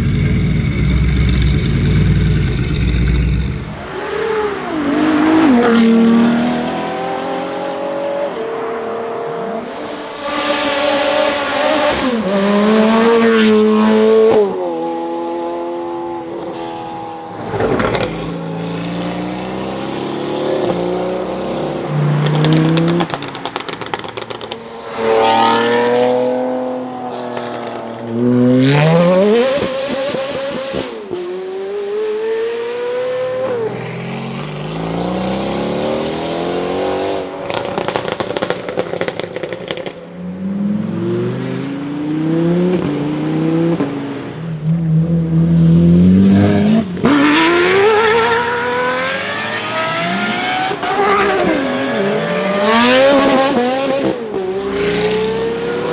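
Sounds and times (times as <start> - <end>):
sports car engine revving: 0.0 - 8.2.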